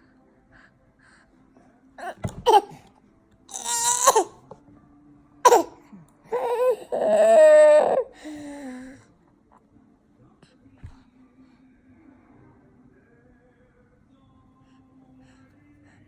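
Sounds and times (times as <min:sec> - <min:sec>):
baby fake coughing: 0:02.0 - 0:02.8, 0:03.5 - 0:04.5, 0:05.4 - 0:08.2.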